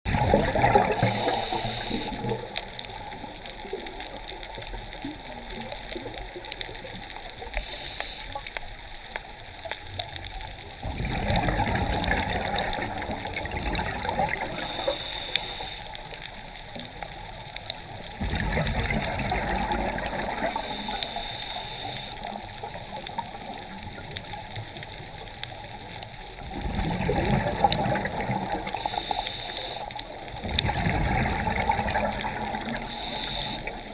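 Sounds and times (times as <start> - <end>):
exhaled bubbles gurgling: 0.1 - 33.9
regulator hissing on inhale: 0.9 - 2.4, 7.5 - 8.5, 14.4 - 16.2, 20.4 - 22.5, 28.7 - 30.2, 32.6 - 33.9.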